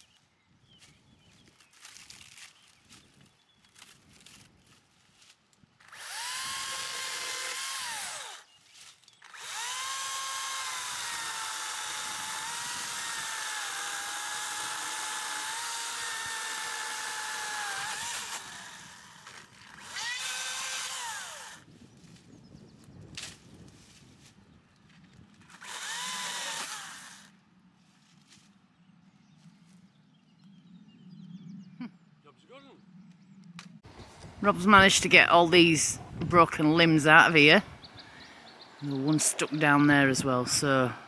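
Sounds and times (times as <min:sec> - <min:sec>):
power tool motor whining: 0:05.8 - 0:08.5, 0:09.2 - 0:21.7, 0:25.5 - 0:27.3.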